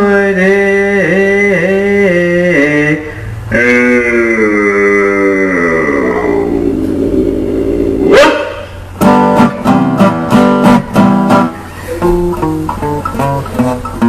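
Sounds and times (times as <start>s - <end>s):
guitar strumming chords: 9.0s - 14.0s.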